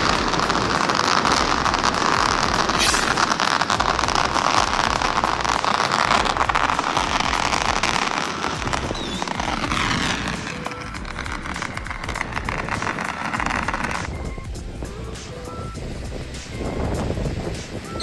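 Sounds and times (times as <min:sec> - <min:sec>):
firecrackers crackling: 0:00.0 - 0:18.0.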